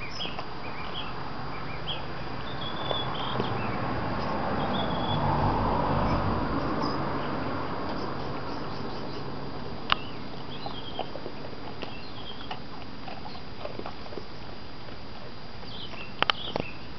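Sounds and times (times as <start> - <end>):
dog crunching dry biscuits: 9.8 - 16.6.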